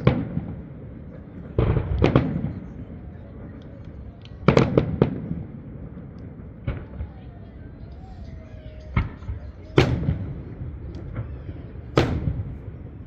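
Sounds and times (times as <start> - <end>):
firework booms and cracks: 0.0 - 3.1, 4.2 - 7.4, 8.8 - 13.0
sharp firework bangs: 12.0 - 12.9.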